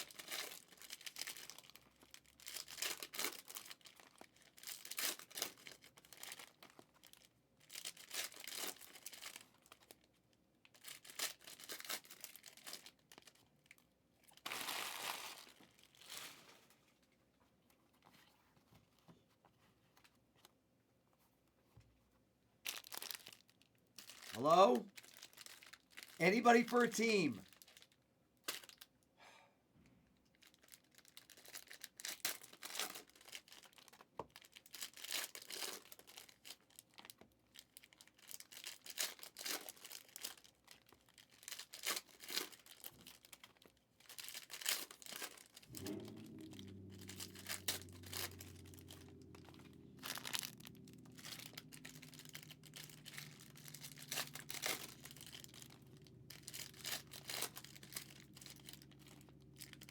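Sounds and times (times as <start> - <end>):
plastic wrapping crinkling: 14.3 - 16.6, 22.6 - 28.8, 46.5 - 59.9
low steady hum: 45.7 - 59.9.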